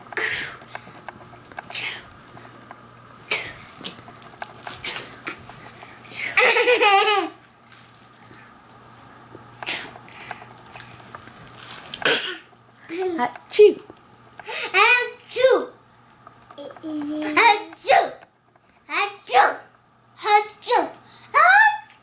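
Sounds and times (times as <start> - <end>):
child laughing loudly: 6.4 - 7.4.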